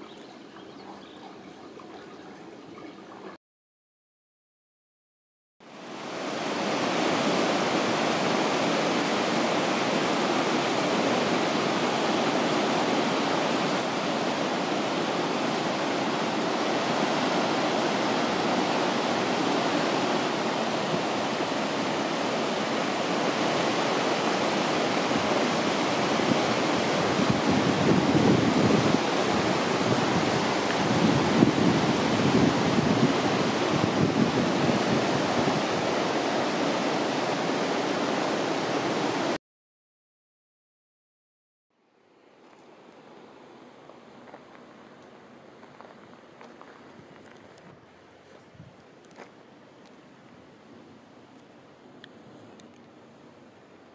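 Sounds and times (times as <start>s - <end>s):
rushing creek water: 0.0s - 3.4s, 5.6s - 39.4s.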